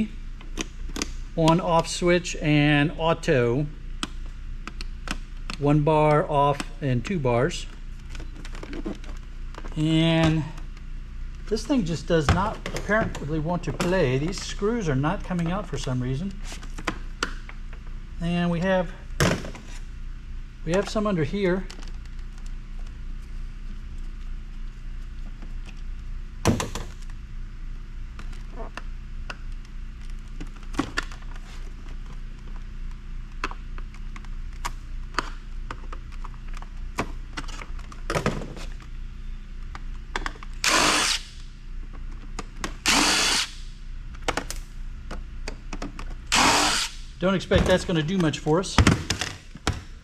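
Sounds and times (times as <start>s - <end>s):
power drill driving screws: 40.6s - 41.3s, 42.8s - 43.6s, 46.3s - 47.0s.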